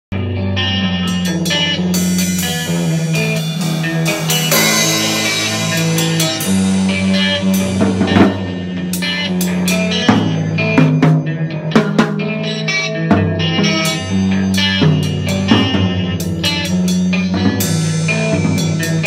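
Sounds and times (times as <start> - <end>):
rock music with drums bass guitar: 0.1 - 19.0
heavy drum hit: 1.2 - 9.0.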